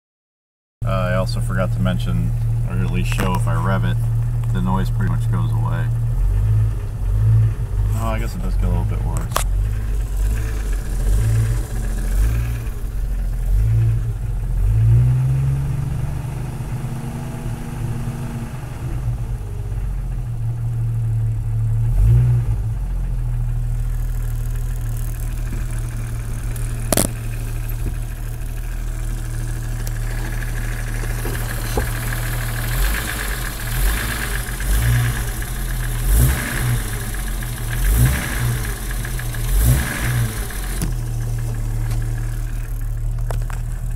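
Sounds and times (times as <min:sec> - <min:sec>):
car engine idling: 0:00.8 - 0:43.9
engine revving: 0:01.1 - 0:43.9
engine knocking: 0:02.4 - 0:14.6, 0:19.2 - 0:21.7, 0:22.6 - 0:43.9
sharp click: 0:26.5 - 0:27.8.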